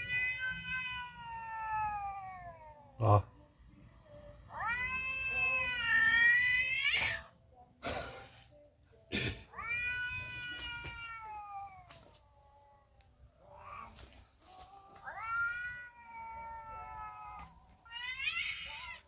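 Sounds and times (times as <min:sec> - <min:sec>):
cat meowing: 0:00.0 - 0:02.8, 0:09.5 - 0:11.8, 0:14.6 - 0:19.0.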